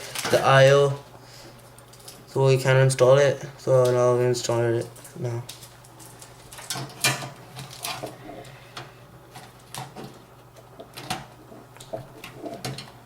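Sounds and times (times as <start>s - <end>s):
clicks and knocks of computer parts: 6.5s - 8.2s, 10.8s - 13.0s.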